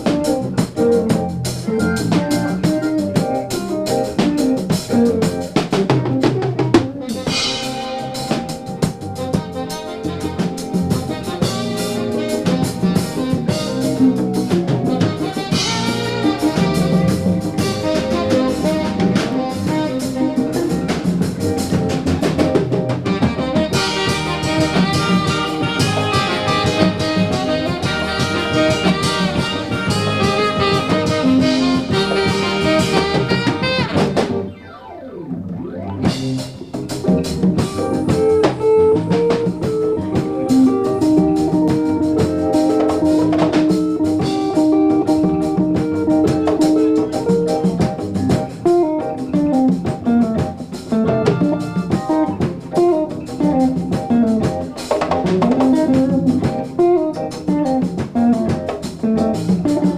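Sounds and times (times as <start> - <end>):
live band playing jazz-funk: 0.0 - 59.9.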